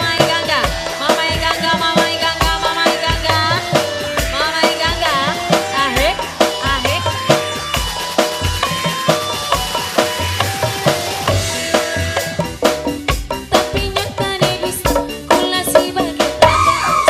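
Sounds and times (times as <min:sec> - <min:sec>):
instrumental band music: 0:00.0 - 0:17.0.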